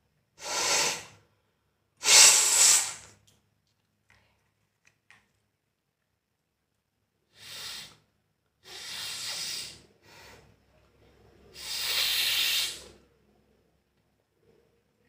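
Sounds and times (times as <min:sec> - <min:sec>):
person blowing nose: 0:00.4 - 0:01.2, 0:02.0 - 0:03.1, 0:07.3 - 0:08.0, 0:08.6 - 0:10.4, 0:11.6 - 0:13.0.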